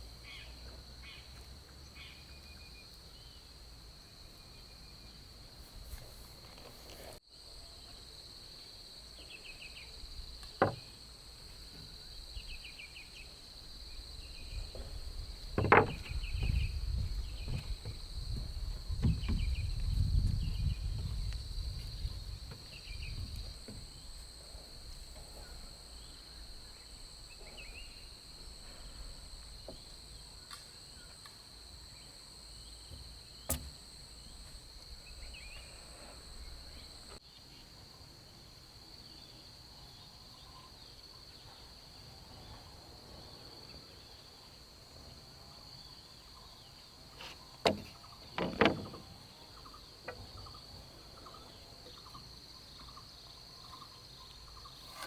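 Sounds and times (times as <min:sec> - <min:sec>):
insects chirring: 0:00.0 - 0:55.0
sharp knocks: 0:10.6 - 0:10.9, 0:15.5 - 0:16.7, 0:33.5 - 0:33.8, 0:47.6 - 0:49.1.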